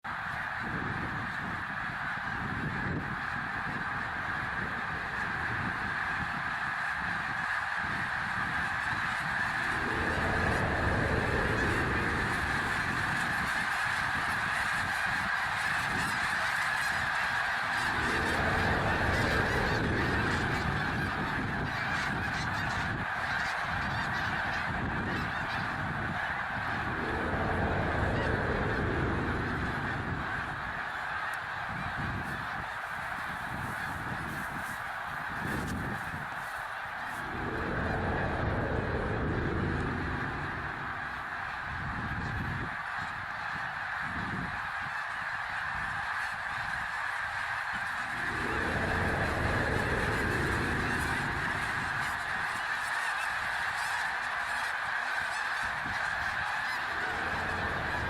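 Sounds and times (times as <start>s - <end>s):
high buzzing drone: 9.0s - 13.7s, 17.1s - 21.6s, 26.4s - 30.8s, 36.9s - 42.9s, 47.6s - 52.7s, 55.9s - 58.0s
deep swelling tones: 9.4s - 13.0s, 17.7s - 21.3s, 26.6s - 30.8s, 37.0s - 42.6s, 47.8s - 52.3s, 56.8s - 58.0s.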